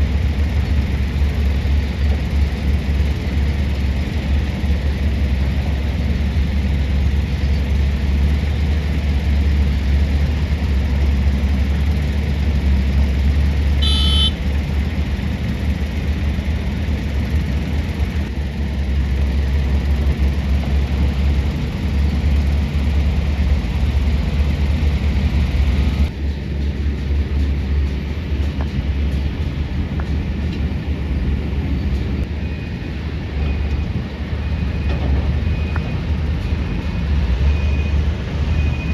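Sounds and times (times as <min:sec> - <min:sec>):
heavy diesel machinery rumbling: 0:00.0 - 0:38.9
high-pitched tone: 0:13.8 - 0:14.4.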